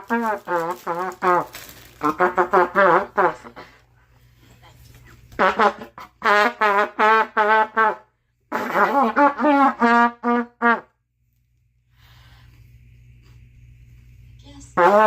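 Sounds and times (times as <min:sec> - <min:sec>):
unsteady trumpet notes: 0:00.0 - 0:03.8, 0:05.4 - 0:10.9, 0:14.8 - 0:15.0.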